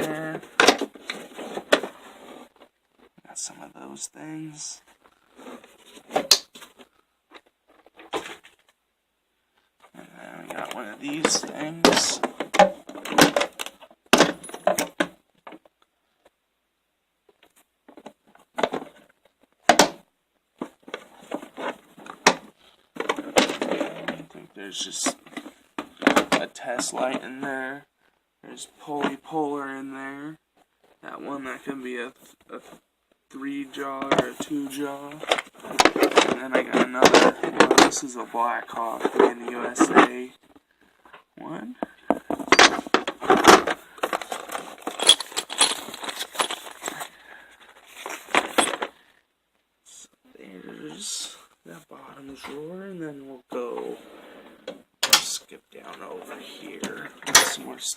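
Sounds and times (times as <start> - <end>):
metal hand tools clinking: 44.1 - 47.1.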